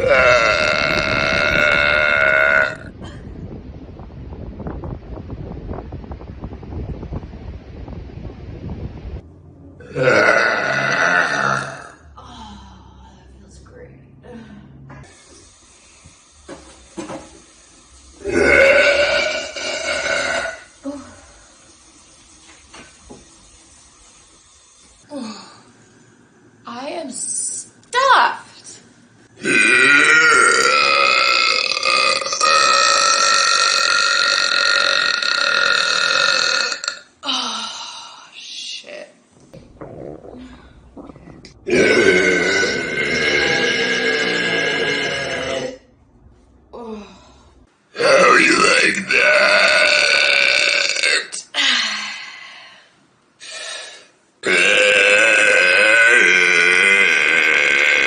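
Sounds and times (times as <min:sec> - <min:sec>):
long loud belches: 0:00.0 - 0:03.0, 0:09.8 - 0:12.1, 0:18.2 - 0:20.8, 0:29.4 - 0:37.1, 0:39.6 - 0:45.9, 0:48.0 - 0:51.4, 0:54.4 - 0:58.0
long loud burp: 0:00.0 - 0:03.2, 0:09.8 - 0:12.2, 0:18.2 - 0:21.3, 0:29.4 - 0:37.1, 0:39.7 - 0:45.9, 0:48.0 - 0:51.4, 0:54.4 - 0:58.0.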